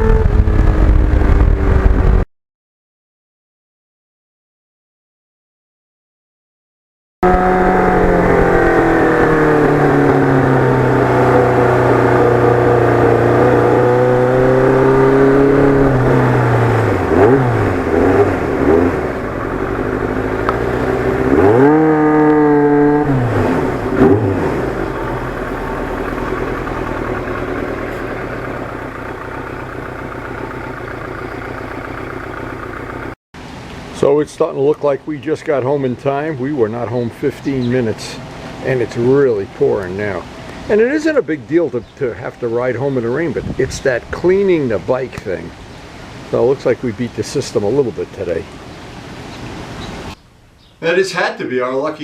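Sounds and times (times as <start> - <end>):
motorcycle engine running: 0.0 - 2.2, 7.2 - 33.2.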